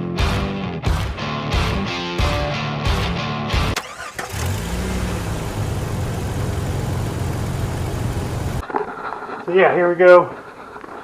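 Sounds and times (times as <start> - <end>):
rock guitar music: 0.0 - 3.8
car engine starting and running: 3.8 - 8.6.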